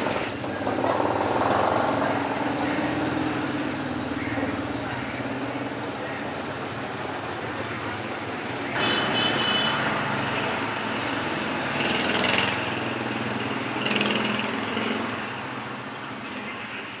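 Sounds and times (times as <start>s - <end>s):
street traffic: 0.0s - 17.0s
small engine running: 11.0s - 15.6s.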